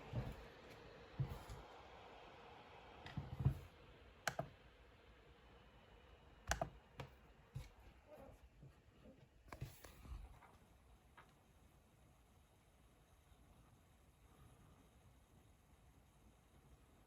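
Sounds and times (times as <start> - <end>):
laptop cooling fan hiss: 0.0 - 17.0
soft clicks: 4.3 - 4.6, 6.5 - 7.1
sharp clicks and light knocks: 6.5 - 7.7.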